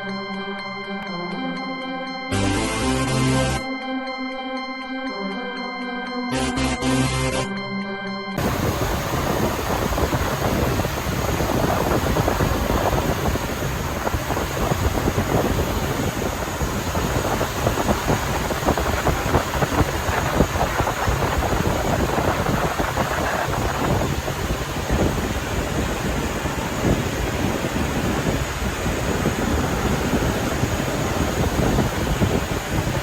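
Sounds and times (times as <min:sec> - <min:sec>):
wind buffeting microphone: 0:08.4 - 0:33.0.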